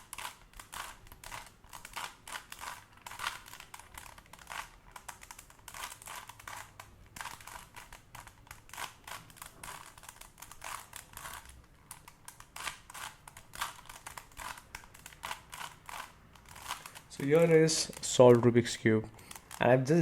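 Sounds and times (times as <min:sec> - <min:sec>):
puzzle cube plastic clicks: 0:00.0 - 0:19.8.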